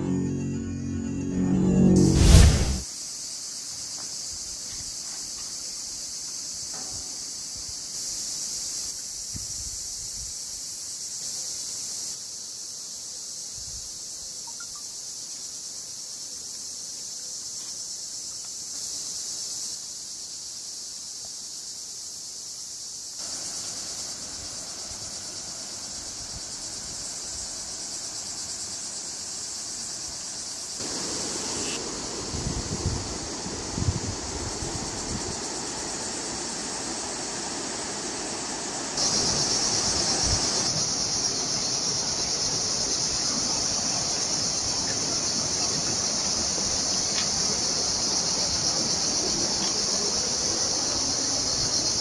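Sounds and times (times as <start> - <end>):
insect chorus shrilling: 2.0 - 52.0
stream water rushing: 30.8 - 52.0.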